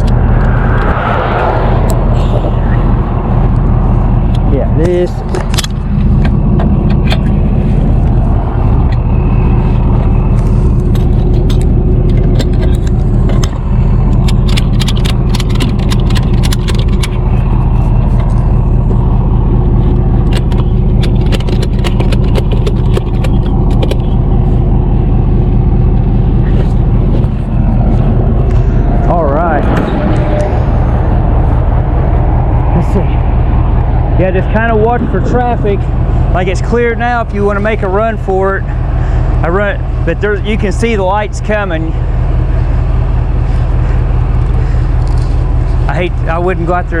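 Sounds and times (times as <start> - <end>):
road traffic noise: 0.0 - 47.0
truck engine running: 0.0 - 47.0
light rattling clicks: 10.9 - 17.3.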